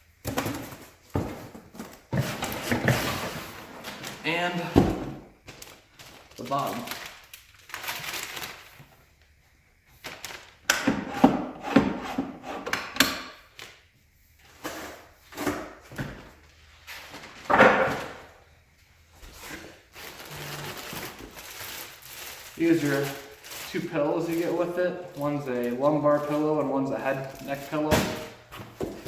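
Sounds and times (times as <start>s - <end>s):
packaging rustling: 5.4s - 9.4s, 19.3s - 29.0s
knocks and scrapes of chair parts: 10.8s - 13.4s.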